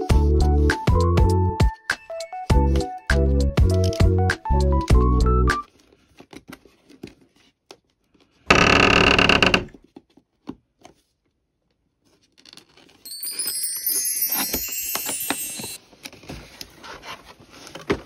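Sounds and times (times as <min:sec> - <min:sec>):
bright jingling ringing: 0:13.0 - 0:15.8.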